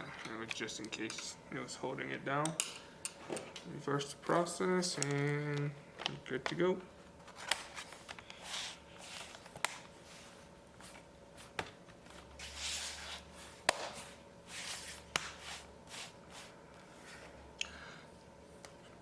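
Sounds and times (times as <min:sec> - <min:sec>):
soft rustling and sliding: 0:07.2 - 0:17.4.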